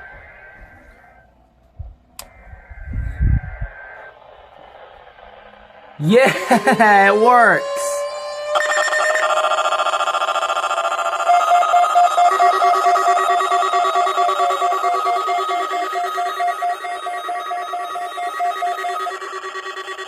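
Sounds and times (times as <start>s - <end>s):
weather radio alarms beeping: 6.0s - 20.0s.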